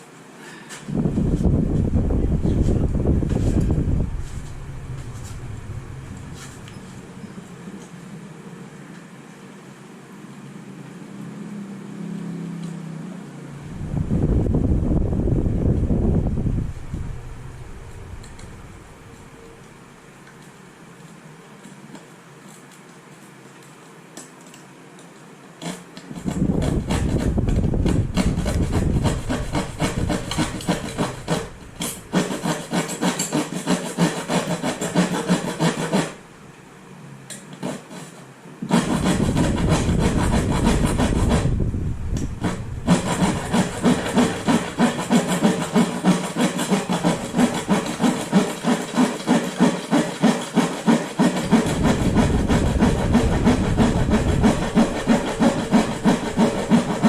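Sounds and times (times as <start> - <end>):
plywood being sawn: 25.6 - 36.2, 37.6 - 57.0.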